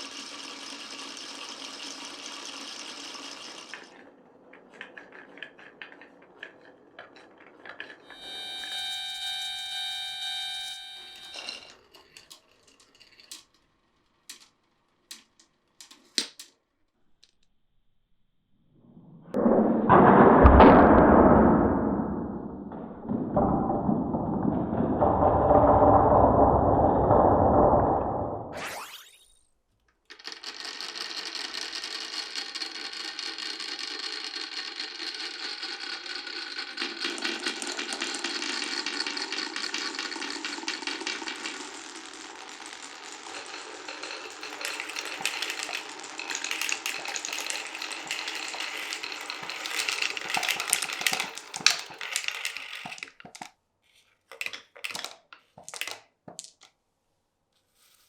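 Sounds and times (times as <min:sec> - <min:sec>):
marbles rattling down a run: 0:00.0 - 0:16.5, 0:28.6 - 0:29.3, 0:30.1 - 0:53.5, 0:54.3 - 0:56.7.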